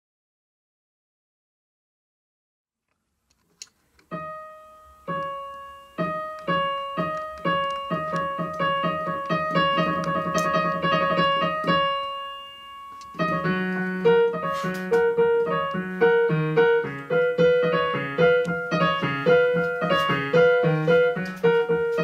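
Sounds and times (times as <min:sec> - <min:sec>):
small click: 0:02.9 - 0:04.1
piano notes and chords: 0:04.0 - 0:22.0.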